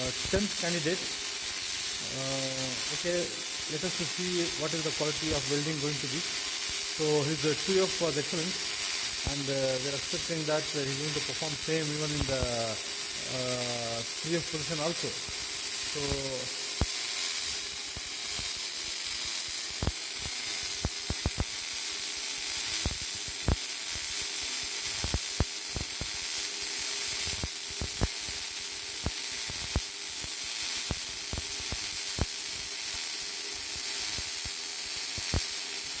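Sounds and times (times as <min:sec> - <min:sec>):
welding arc crackling hiss: 0:00.0 - 0:36.0
welding arc sharp pops: 0:00.0 - 0:36.0.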